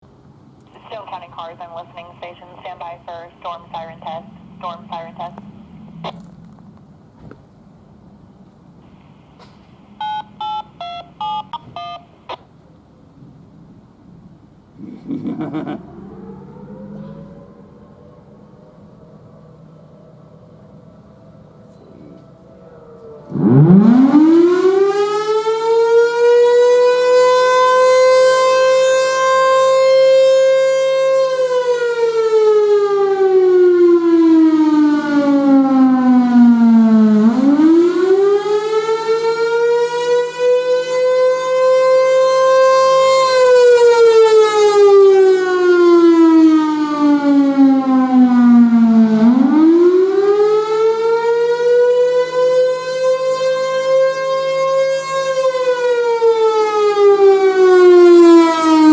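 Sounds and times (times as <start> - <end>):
storm siren wailing: 0.8 - 14.5, 15.1 - 58.9.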